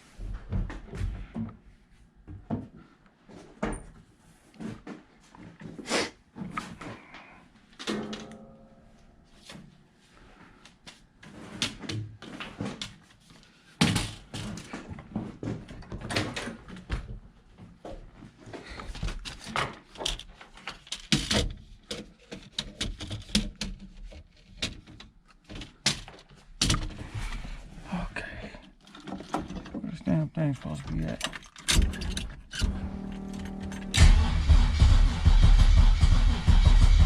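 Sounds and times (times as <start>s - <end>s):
objects knocking and clunking: 0.2s - 4.0s, 6.4s - 9.7s, 13.8s - 27.6s, 28.5s - 33.9s.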